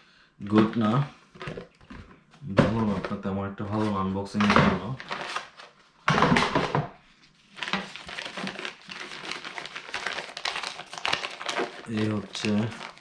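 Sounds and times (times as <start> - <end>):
paper crinkling and rustling: 2.9 - 13.0.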